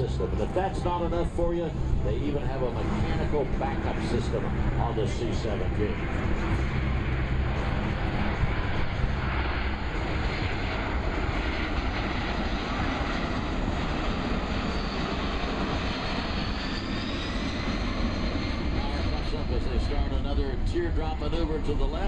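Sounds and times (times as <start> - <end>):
faint rising whine: 0.0 - 22.0
loud jet engine noise: 0.0 - 22.0.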